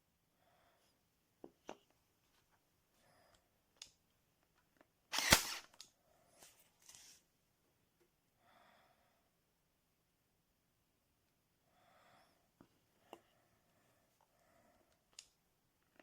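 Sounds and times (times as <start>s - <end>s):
staple gun firing: 5.1s - 5.7s.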